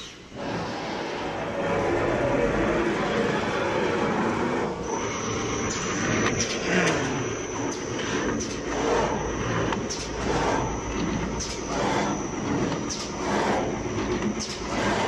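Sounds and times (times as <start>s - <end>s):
thin high whine: 0.0s - 14.8s
machine mechanical clatter: 0.0s - 15.0s.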